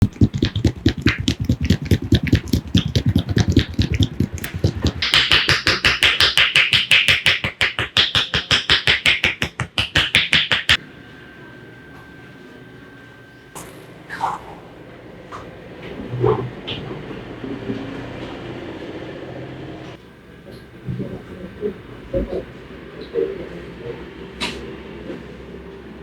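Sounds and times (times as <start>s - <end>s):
hands slapping and tapping on head: 0.0s - 10.8s.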